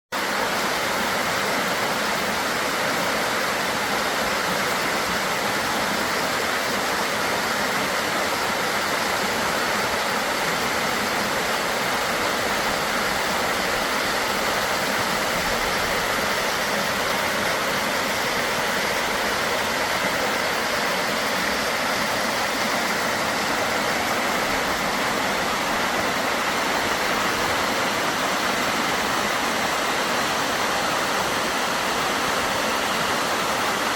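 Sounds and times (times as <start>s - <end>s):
waterfall rushing: 0.2s - 33.9s.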